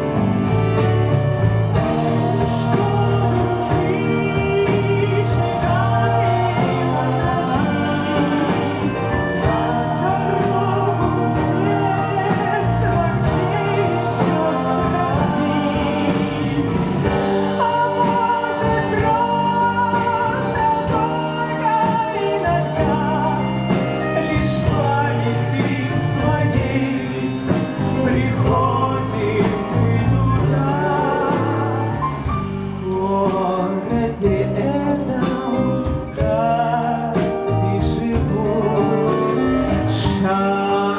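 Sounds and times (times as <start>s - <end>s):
bayan accordion: 0.0s - 32.8s, 38.4s - 40.9s
clarinet: 0.0s - 32.8s, 35.8s - 40.9s
bass: 0.0s - 40.9s
drums: 0.0s - 40.9s
piano: 0.0s - 40.9s
person singing: 1.2s - 40.9s.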